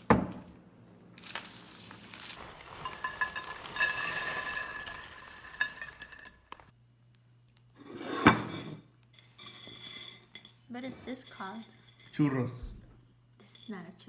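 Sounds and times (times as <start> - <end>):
plastic packaging crinkling: 1.2 - 5.6.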